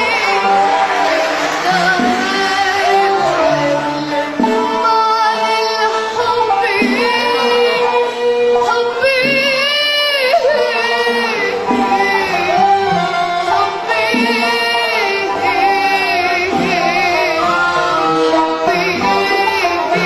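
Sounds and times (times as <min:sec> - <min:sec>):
girl singing: 0:00.0 - 0:12.9
live band accompaniment: 0:00.0 - 0:20.0.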